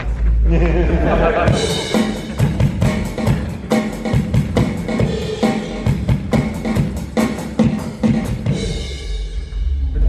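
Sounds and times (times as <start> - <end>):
live rock band playing: 1.3 - 9.4
drum kit kick and snare hits: 1.4 - 9.0.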